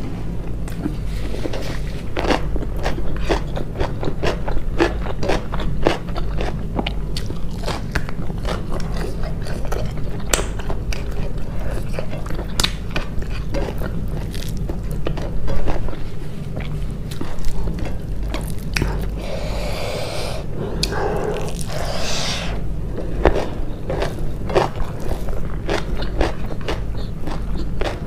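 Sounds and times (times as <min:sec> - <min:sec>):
steady low hum: 0:00.0 - 0:28.0
close chewing with crunches: 0:00.6 - 0:28.0
mouth clicks: 0:19.2 - 0:22.6.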